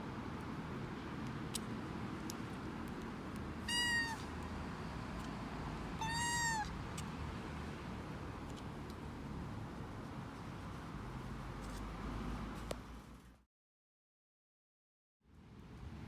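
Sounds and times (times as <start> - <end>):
kitten meowing: 3.6 - 4.3, 6.0 - 6.8.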